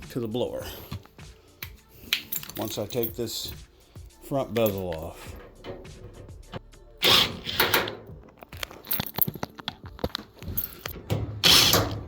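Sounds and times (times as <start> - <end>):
small metallic clicks and clinks: 2.1 - 3.6, 8.3 - 11.0
tools and screws rattling: 2.2 - 12.0.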